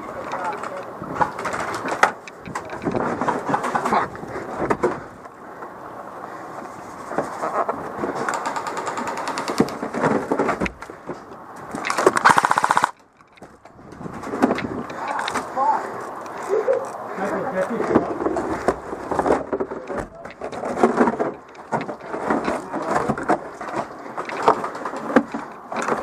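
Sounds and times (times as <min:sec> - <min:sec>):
airsoft rifle firing bursts: 0:12.2 - 0:13.0.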